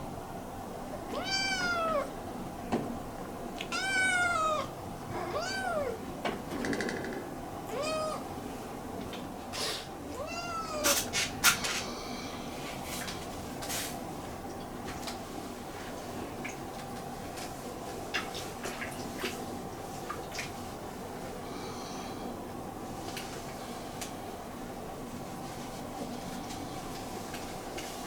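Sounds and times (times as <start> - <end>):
kitten meowing: 1.1 - 2.1, 3.6 - 6.0, 7.7 - 8.2, 10.2 - 11.0.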